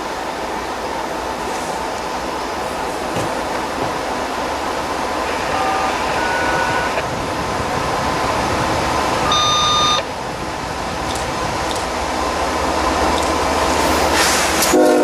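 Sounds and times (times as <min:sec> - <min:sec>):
train rumbling and rattling: 0:00.0 - 0:15.0
high-pitched tones: 0:09.3 - 0:10.1.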